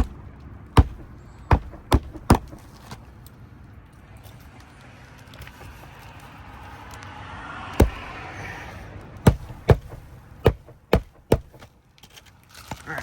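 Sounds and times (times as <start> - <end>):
hammer striking roofing nails: 0.0 - 2.8, 7.8 - 8.1, 9.2 - 11.7.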